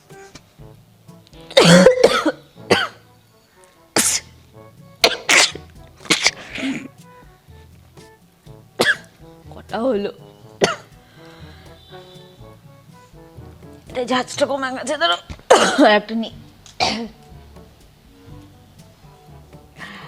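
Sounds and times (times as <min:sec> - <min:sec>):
faint background music: 0:00.0 - 0:20.0
woman sneezing and coughing: 0:01.6 - 0:03.0, 0:05.0 - 0:06.9, 0:15.5 - 0:16.0, 0:16.8 - 0:17.1.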